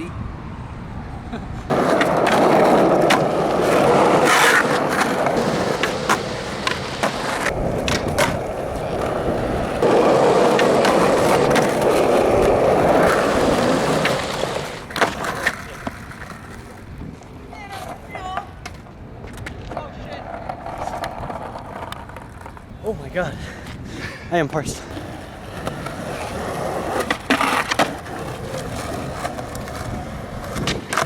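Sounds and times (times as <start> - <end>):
skateboard rolling on pavement: 0.3 - 31.0
skateboard wheels clicking over cracks: 1.7 - 22.7, 24.9 - 31.0.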